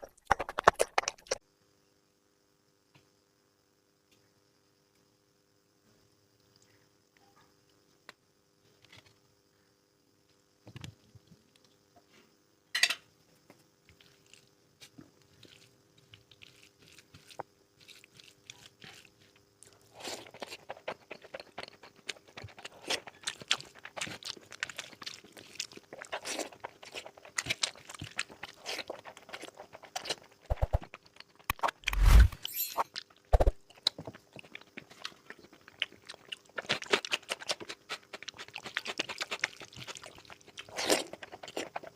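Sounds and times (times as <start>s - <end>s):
chewing and crunching food: 0.0s - 1.4s, 13.4s - 41.9s.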